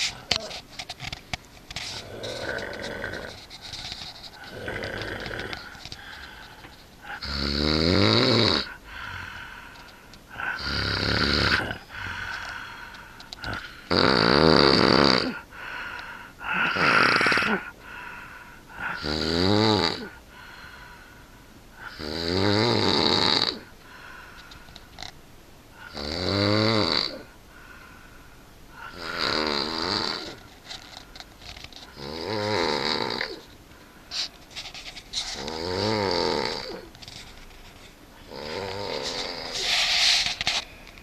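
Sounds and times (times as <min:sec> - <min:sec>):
person snoring loudly: 0:02.0 - 0:03.4, 0:04.4 - 0:06.1, 0:07.0 - 0:09.4, 0:10.3 - 0:12.8, 0:13.4 - 0:15.5, 0:16.4 - 0:17.8, 0:18.8 - 0:20.2, 0:21.8 - 0:23.7, 0:25.8 - 0:27.3, 0:28.8 - 0:30.4, 0:31.9 - 0:33.4, 0:35.3 - 0:36.9, 0:38.2 - 0:40.0.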